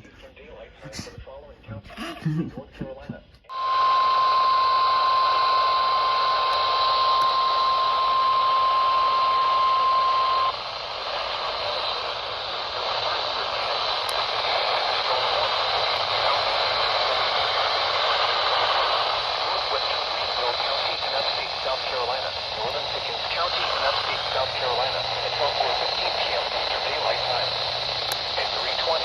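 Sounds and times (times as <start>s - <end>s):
radio static hiss: 0.0s - 29.0s
faint high whine: 2.5s - 29.0s
steady warning alarm tone: 3.5s - 12.7s.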